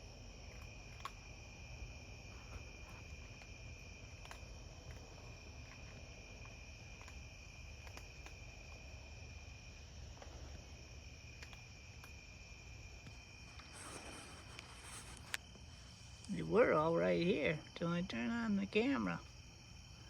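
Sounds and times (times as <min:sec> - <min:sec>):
crickets trilling: 0:00.0 - 0:20.0
faint ticks: 0:00.4 - 0:01.2, 0:02.4 - 0:09.5, 0:10.1 - 0:12.2.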